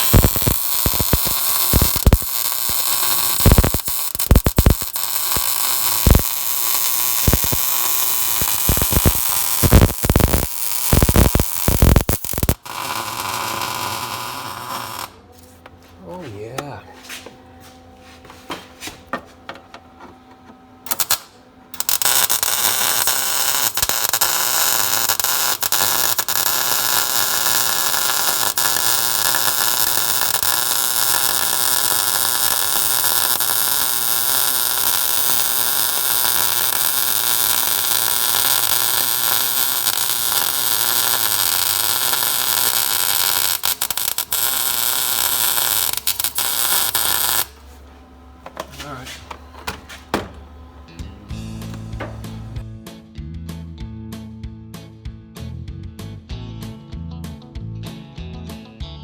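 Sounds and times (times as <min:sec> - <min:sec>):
welding arc crackling and hissing: 0:00.0 - 0:15.2, 0:20.9 - 0:47.9, 0:48.5 - 0:50.4.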